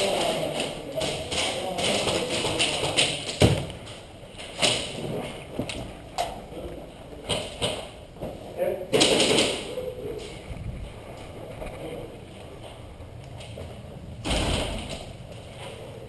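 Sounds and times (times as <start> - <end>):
steady background noise: 0.0 - 16.0
sharp knocks and thuds: 14.2 - 15.1.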